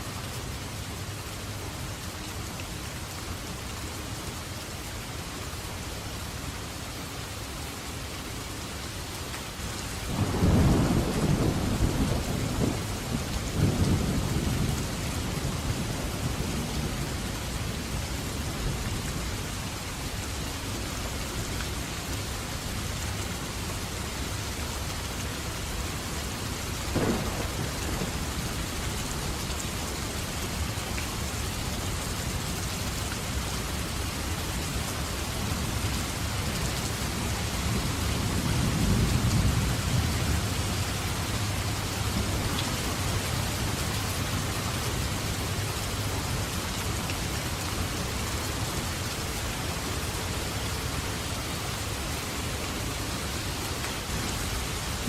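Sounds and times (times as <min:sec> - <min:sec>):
heavy rain falling: 0:00.0 - 0:55.0
thunder rumbling: 0:10.1 - 0:17.8, 0:26.9 - 0:29.7
sharp thunder crack: 0:27.0 - 0:28.5.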